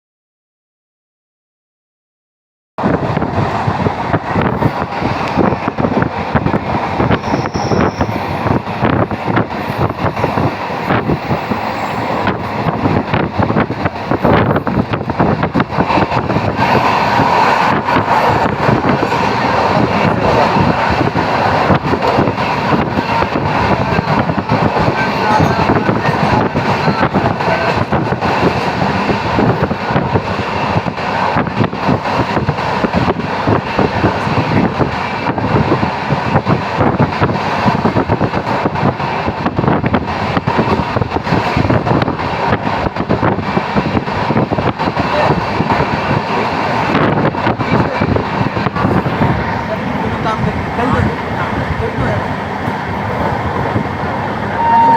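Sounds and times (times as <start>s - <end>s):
wind noise: 2.8s - 54.9s.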